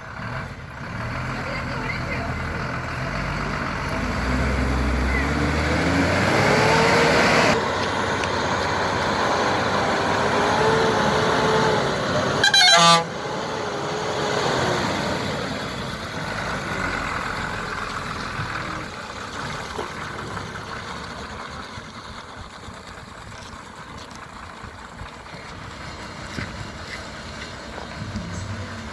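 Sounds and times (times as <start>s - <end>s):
heavy diesel engine running: 0.0s - 28.9s
loud horn blast: 12.4s - 13.2s.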